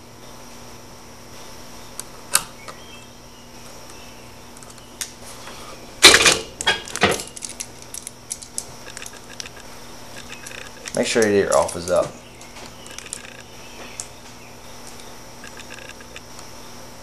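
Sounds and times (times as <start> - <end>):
metallic rattles of pliers and wire: 6.0 - 9.6, 10.2 - 13.4.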